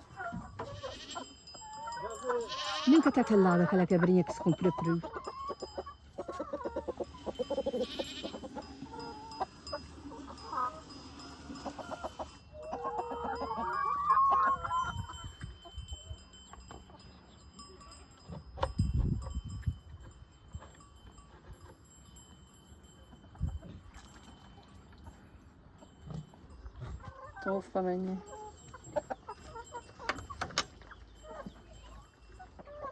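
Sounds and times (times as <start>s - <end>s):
chickens calling: 0.0s - 17.6s, 25.7s - 32.9s
young goat bleating: 0.6s - 1.4s, 2.3s - 3.4s, 7.3s - 8.7s.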